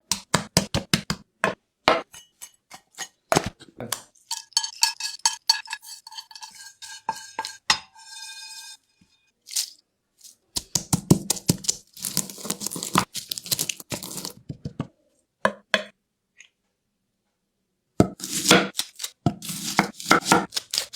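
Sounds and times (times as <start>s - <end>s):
utensil scraping bowl: 2.2s - 9.6s, 11.4s - 14.4s
utensils knocking on metal bowl: 4.3s - 7.9s.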